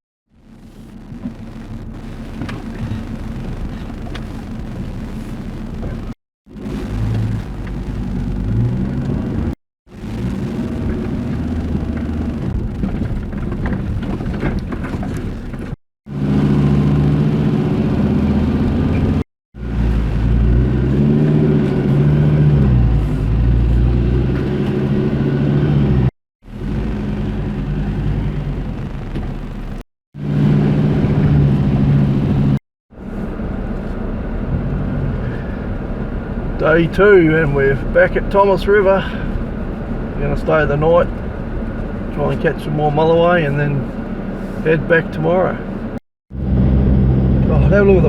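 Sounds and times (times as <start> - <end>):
vehicle engine running: 0.3 - 48.0
knocks and rattles: 12.0 - 15.8.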